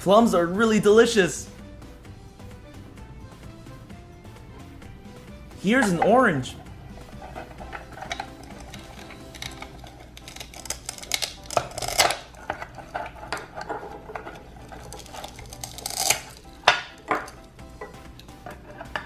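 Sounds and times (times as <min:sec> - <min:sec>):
velcro pulling apart: 0:10.2 - 0:12.3, 0:14.9 - 0:16.4.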